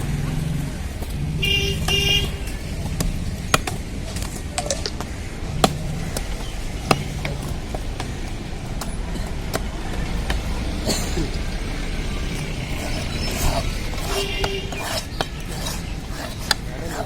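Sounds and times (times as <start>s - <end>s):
low traffic engine rumble: 0.0s - 17.0s
knife chopping fish: 12.2s - 17.0s.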